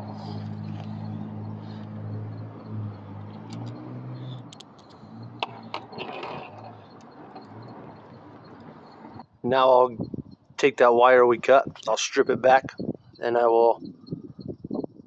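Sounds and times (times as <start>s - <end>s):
sharp clicks of hand tools: 3.4s - 3.8s, 4.4s - 5.8s.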